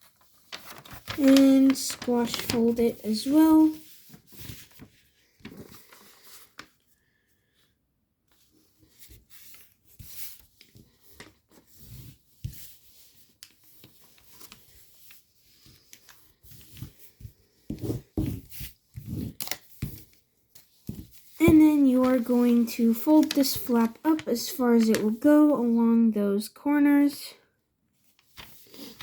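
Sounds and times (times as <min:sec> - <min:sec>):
paper rustling and crinkling: 0:00.0 - 0:06.9, 0:08.3 - 0:25.8, 0:28.0 - 0:29.0.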